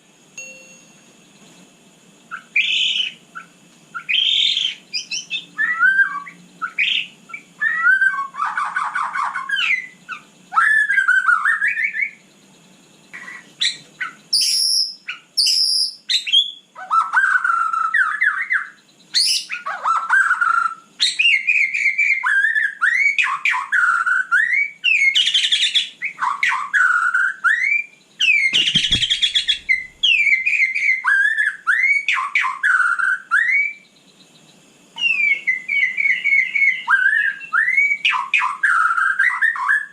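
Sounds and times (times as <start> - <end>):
bird singing whistled phrases: 2.3 - 12.2, 13.1 - 34.0, 35.0 - 39.9
dull knock: 28.5 - 29.8.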